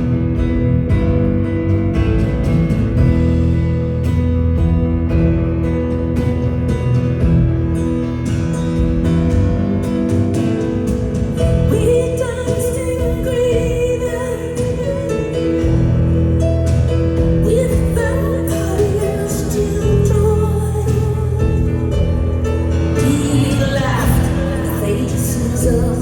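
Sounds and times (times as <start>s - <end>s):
live band playing: 0.0s - 26.0s
woman singing: 11.4s - 15.8s, 17.2s - 26.0s.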